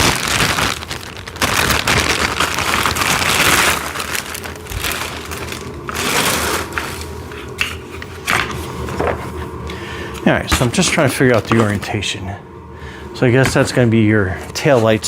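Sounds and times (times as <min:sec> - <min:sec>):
packaging crinkling and rustling: 0:00.0 - 0:09.4.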